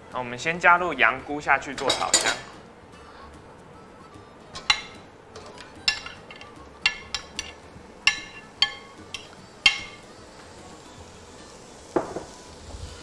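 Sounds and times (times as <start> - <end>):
utensil clinking against metal pan: 4.6 - 10.0
mushrooms stir-frying: 4.7 - 13.0.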